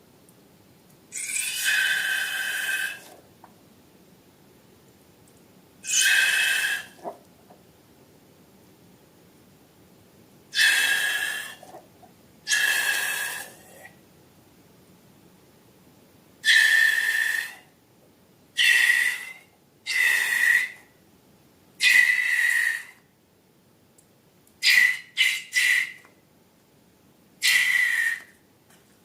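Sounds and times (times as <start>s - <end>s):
air hissing with whistling tone: 1.2s - 3.2s, 10.6s - 11.8s, 12.5s - 13.6s, 16.4s - 17.7s, 18.6s - 20.8s, 21.8s - 23.0s, 24.6s - 26.0s, 27.4s - 28.3s.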